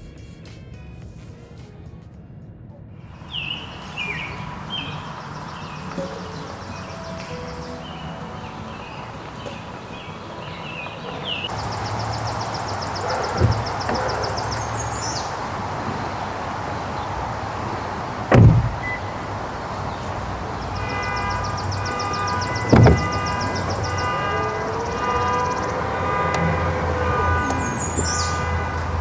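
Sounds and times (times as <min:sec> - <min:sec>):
steady tones: 0:03.2 - 0:29.0
vehicle rumble: 0:03.2 - 0:29.0
heavy thumps: 0:03.5 - 0:29.0.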